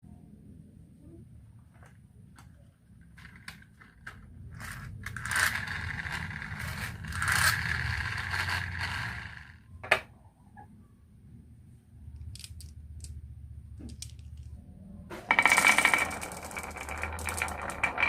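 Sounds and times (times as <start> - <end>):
marbles rolling on wooden run: 3.1 - 9.6, 15.3 - 18.0
marble clicks: 12.1 - 13.2, 13.8 - 14.6, 15.3 - 18.0.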